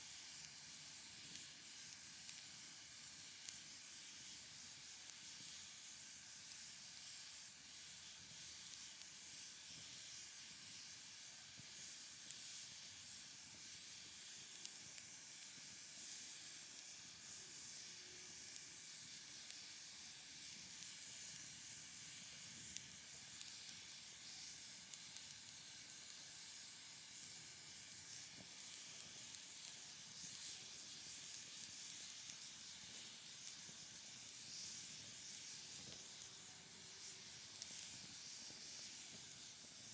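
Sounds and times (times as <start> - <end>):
wood fire crackling: 27.2 - 39.4.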